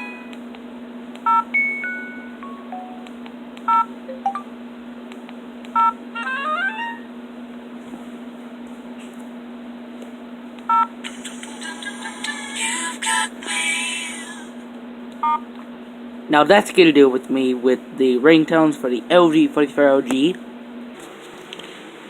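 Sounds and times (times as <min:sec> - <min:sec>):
steady low hum: 0:00.0 - 0:22.0
electronic ringtone tunes: 0:01.6 - 0:03.1, 0:04.1 - 0:04.5, 0:05.8 - 0:07.1.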